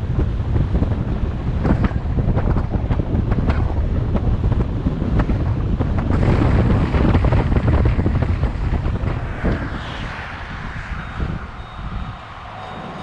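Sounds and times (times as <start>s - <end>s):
wind buffeting microphone: 0.0s - 13.0s
ocean surf washing: 6.1s - 13.0s.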